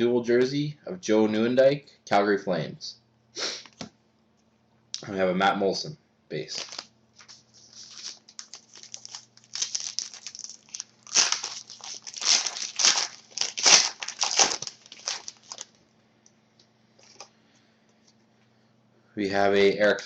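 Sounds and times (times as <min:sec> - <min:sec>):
wrapper crinkling and tearing: 0:06.5 - 0:15.8.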